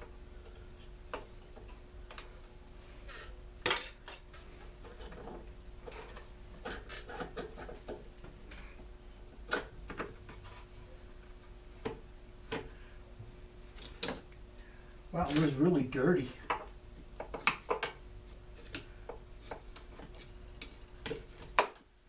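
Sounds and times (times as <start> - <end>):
tools and small parts clattering: 3.1 - 8.0, 15.2 - 16.7.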